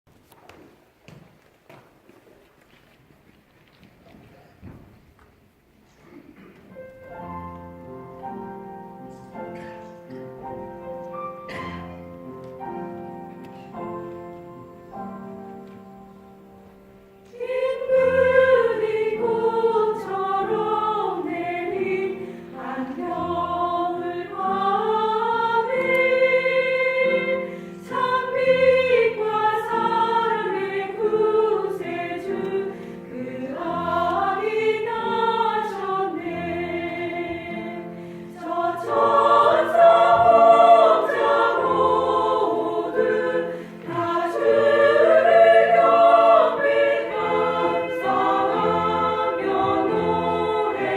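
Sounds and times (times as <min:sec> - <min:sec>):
piano accompaniment: 0:06.7 - 0:50.9
vocal ensemble singing: 0:17.3 - 0:50.9.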